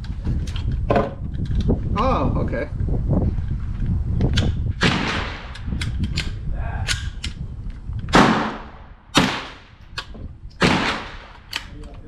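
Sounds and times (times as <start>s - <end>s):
sharp gunshot cracks: 4.8s - 5.7s, 8.1s - 9.8s, 10.6s - 11.6s.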